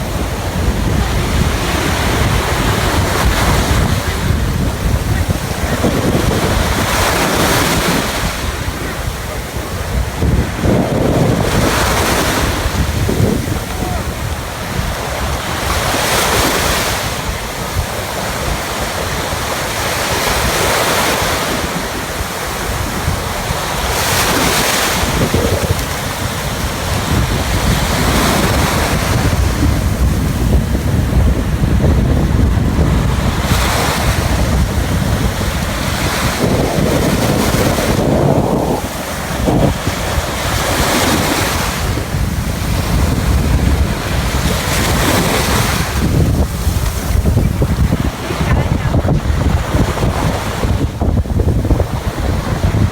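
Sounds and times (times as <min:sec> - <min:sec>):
ocean surf breaking: 0:00.0 - 0:52.9
wind buffeting microphone: 0:00.0 - 0:52.9.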